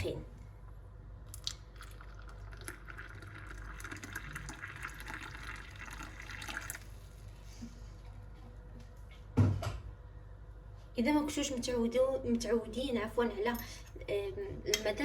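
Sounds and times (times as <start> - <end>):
water pouring into cup: 1.4 - 7.4.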